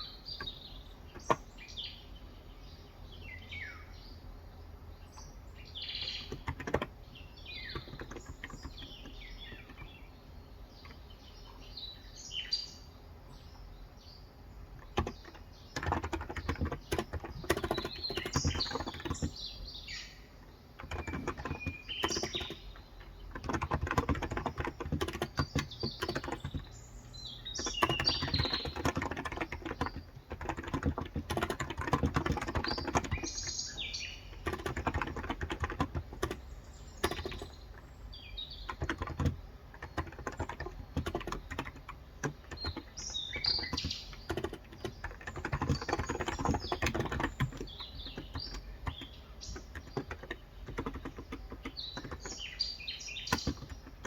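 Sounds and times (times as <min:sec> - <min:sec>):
birds chirping: 0:00.0 - 0:54.0
fast keyboard typing: 0:00.4 - 0:01.4, 0:06.0 - 0:10.0, 0:14.8 - 0:19.7, 0:20.8 - 0:37.9, 0:38.5 - 0:54.0.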